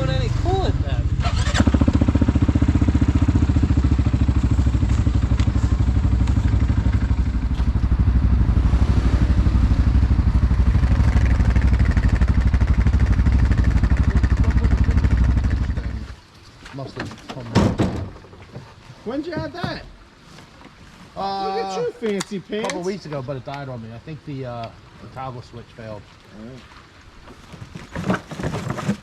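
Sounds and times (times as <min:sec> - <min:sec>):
atv engine idling: 0:00.0 - 0:16.0.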